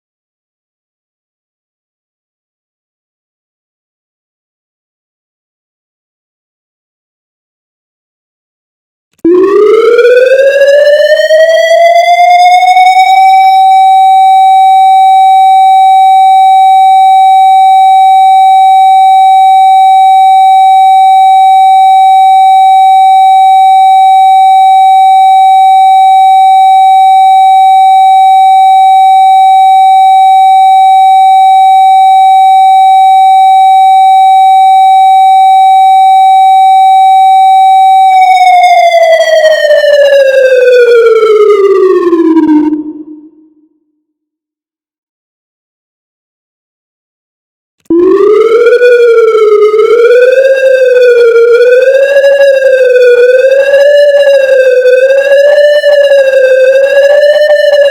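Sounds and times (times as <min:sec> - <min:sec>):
warning siren steady tone: 0:09.2 - 0:43.7, 0:47.9 - 0:57.9.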